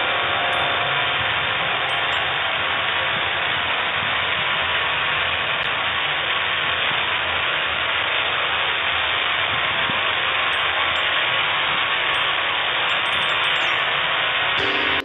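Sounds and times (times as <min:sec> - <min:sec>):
static noise: 0:10.1 - 0:15.0.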